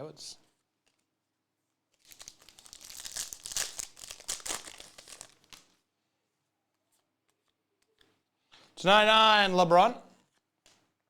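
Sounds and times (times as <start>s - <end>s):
card pack wrapper crinkling: 1.9s - 5.8s.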